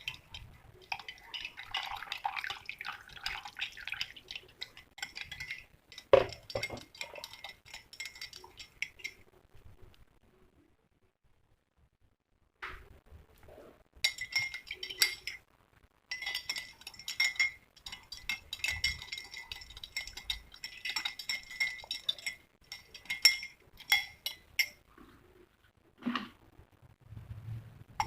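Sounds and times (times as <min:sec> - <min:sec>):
spoon clinking in glass: 0:00.0 - 0:09.2, 0:14.0 - 0:15.4, 0:16.1 - 0:24.8.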